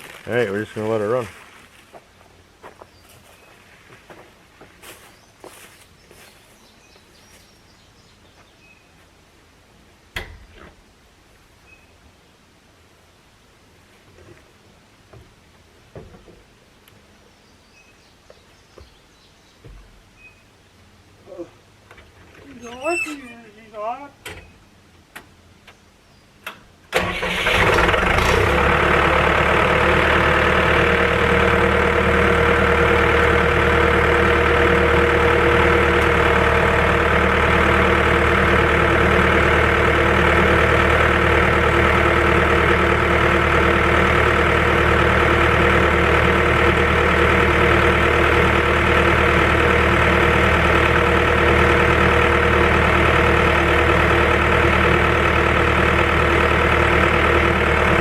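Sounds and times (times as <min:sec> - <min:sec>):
diesel engine cranking and starting: 0:26.9 - 0:58.0
diesel engine idling: 0:26.9 - 0:58.0.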